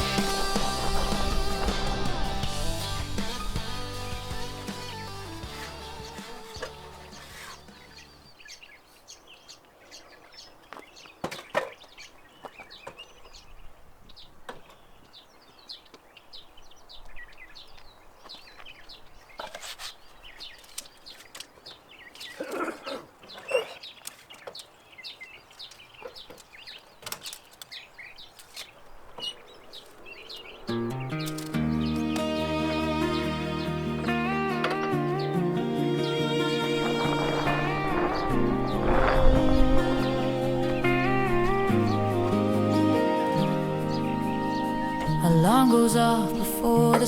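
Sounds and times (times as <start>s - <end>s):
background music: 0.0s - 8.2s, 30.7s - 47.0s
birds chirping: 0.0s - 47.0s.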